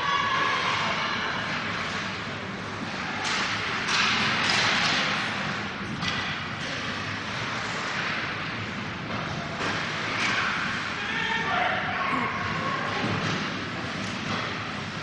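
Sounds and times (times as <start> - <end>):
skates scraping ice: 0.3 - 15.0
hockey sticks and puck knocking: 2.8 - 6.6, 9.1 - 10.8.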